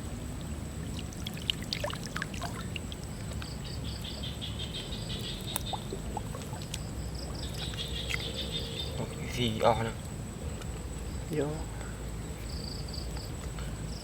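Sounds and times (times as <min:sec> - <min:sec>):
steady low water noise: 0:00.0 - 0:14.0
water splashing and dripping: 0:00.3 - 0:04.3, 0:05.2 - 0:08.3.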